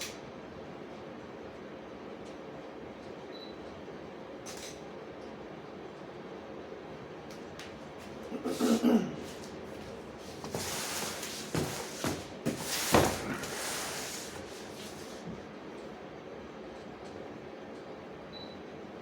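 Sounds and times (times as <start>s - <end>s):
rustling and handling noises: 8.0s - 15.5s.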